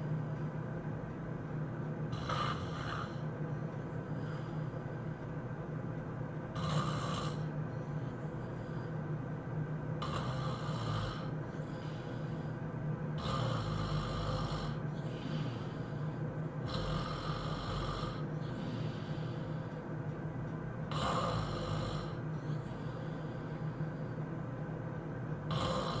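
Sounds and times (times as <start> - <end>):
steady low hum: 0.0 - 26.0
soft breaths: 1.5 - 26.0
person snoring heavily: 2.1 - 3.3, 6.5 - 7.5, 10.0 - 12.5, 13.2 - 19.7, 20.9 - 23.8, 25.5 - 26.0.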